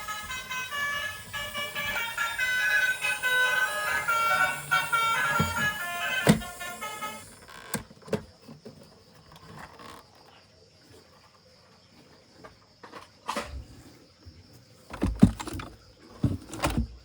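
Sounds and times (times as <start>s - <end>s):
background music: 0.0s - 7.3s.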